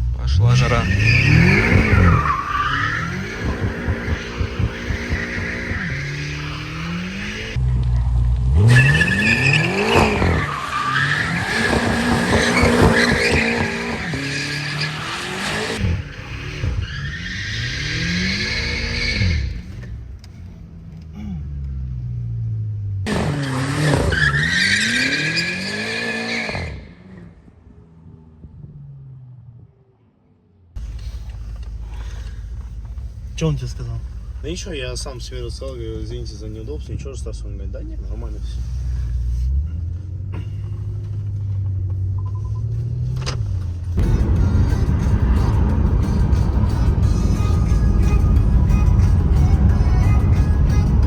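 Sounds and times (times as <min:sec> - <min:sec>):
car engine revving: 0:00.0 - 0:30.1, 0:30.8 - 0:51.0
tyres squealing: 0:00.3 - 0:07.6, 0:08.7 - 0:19.8.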